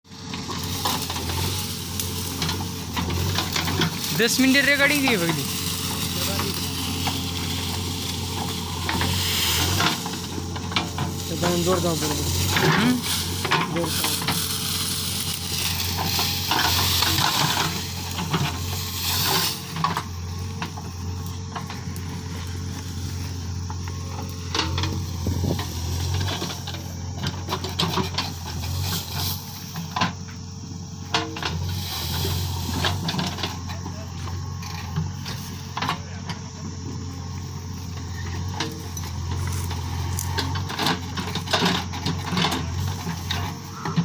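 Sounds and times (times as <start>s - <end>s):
diesel engine droning: 0.0s - 44.0s
bucket scraping soil: 0.4s - 29.8s, 31.4s - 33.7s.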